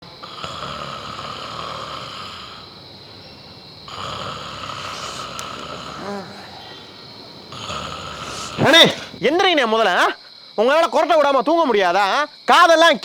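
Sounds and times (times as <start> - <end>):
man snoring: 0.1 - 3.0, 3.7 - 9.3.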